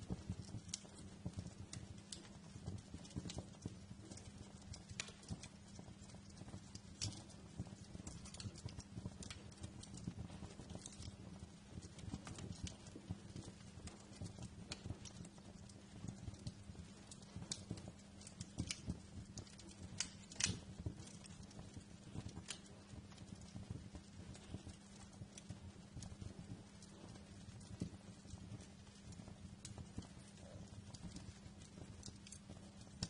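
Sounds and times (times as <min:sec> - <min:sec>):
wood fire crackling: 0:00.0 - 0:33.0.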